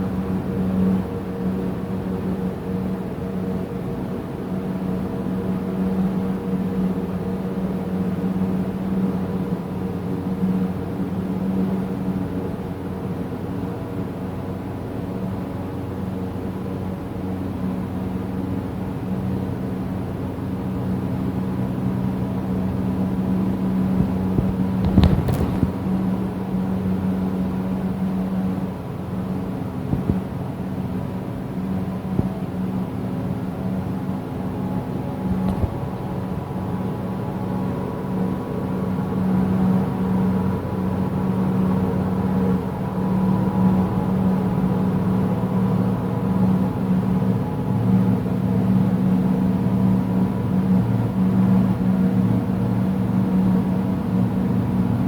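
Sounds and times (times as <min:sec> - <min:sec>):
low droning hum: 0:18.9 - 0:55.0.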